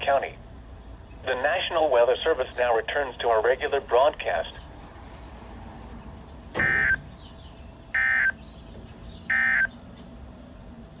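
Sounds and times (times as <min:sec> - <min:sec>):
digital data tone bursts: 0:06.6 - 0:07.0, 0:08.0 - 0:08.4, 0:09.3 - 0:09.7.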